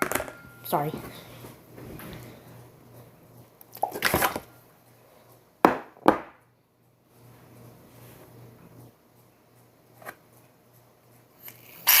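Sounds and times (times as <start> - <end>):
hard objects knocking on surface: 5.6 - 6.4.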